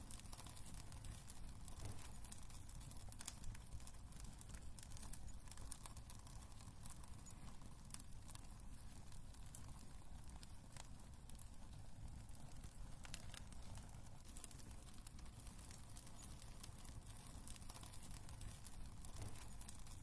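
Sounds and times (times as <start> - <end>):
fire low rumble: 0.0 - 20.0
wood fire crackling: 0.0 - 20.0.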